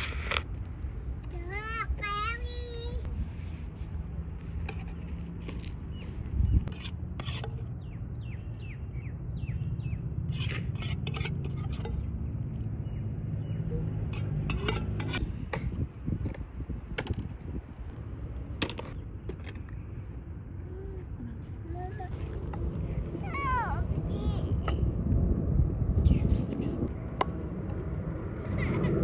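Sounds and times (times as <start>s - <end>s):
steady low rumble: 0.0s - 29.0s
utensils scraping a pan: 6.7s - 7.6s, 10.3s - 12.1s, 14.1s - 15.3s.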